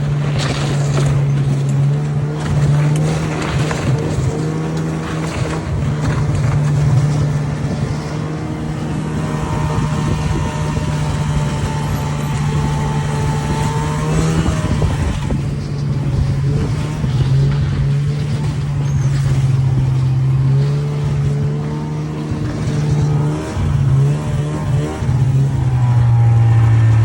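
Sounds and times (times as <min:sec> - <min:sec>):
vehicle engine running under load: 0:00.0 - 0:27.0.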